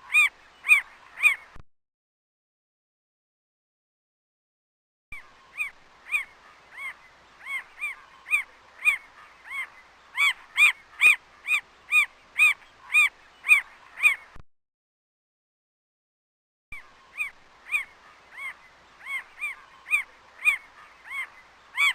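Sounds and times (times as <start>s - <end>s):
bird calling: 0.0s - 1.6s, 5.2s - 14.4s, 16.8s - 21.9s.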